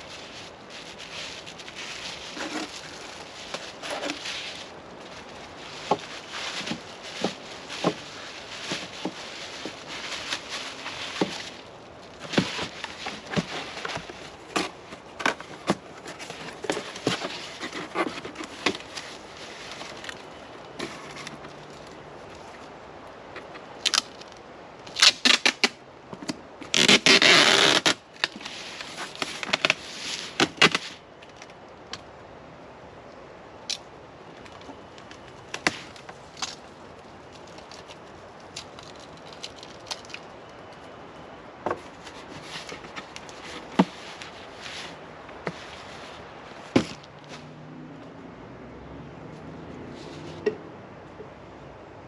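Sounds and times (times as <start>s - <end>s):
packaging rustling scrape: 0.0s - 21.9s.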